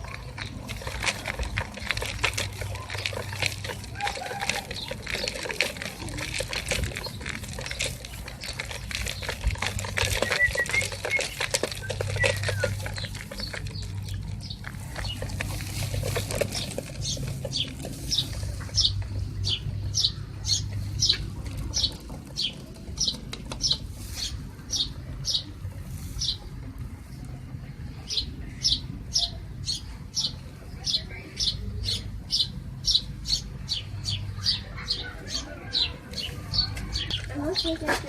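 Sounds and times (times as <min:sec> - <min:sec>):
dense patter of clicks: 0:00.0 - 0:27.4.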